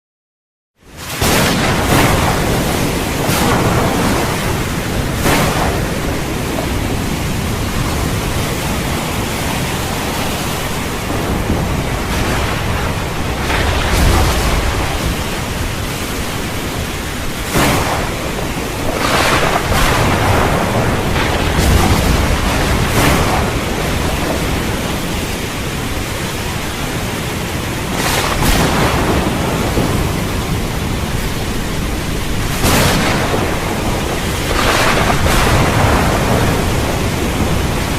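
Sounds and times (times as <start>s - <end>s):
heavy rain: 0.8s - 37.9s
thunder cracks and rumbling: 0.9s - 37.9s.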